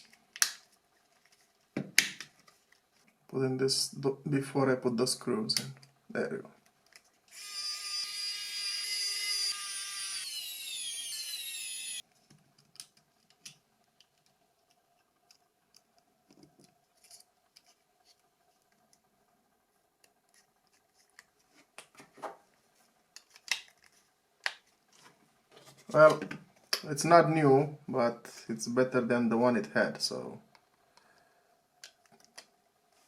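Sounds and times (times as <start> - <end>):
electric screwdriver whine: 7.3 - 12.0.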